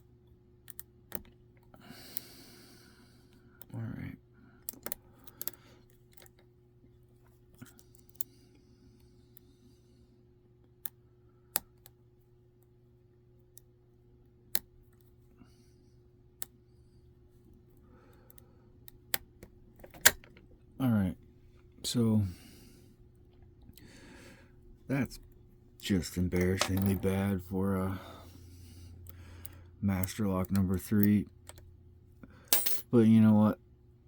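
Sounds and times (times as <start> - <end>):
lock pick metallic clicks: 26.3 - 27.1.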